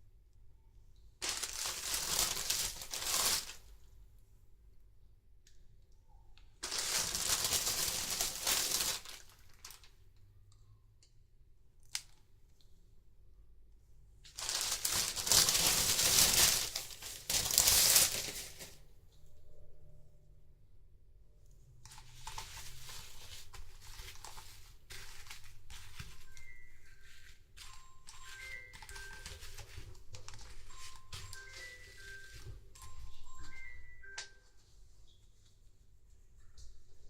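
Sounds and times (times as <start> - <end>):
plastic packaging crinkling: 1.2 - 3.8, 6.6 - 10.0, 14.3 - 18.8, 21.9 - 34.2.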